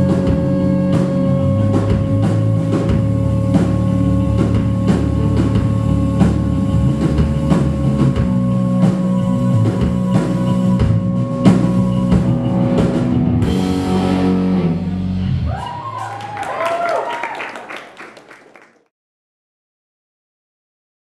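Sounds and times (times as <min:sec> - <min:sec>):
rock band playing live: 0:00.0 - 0:16.4.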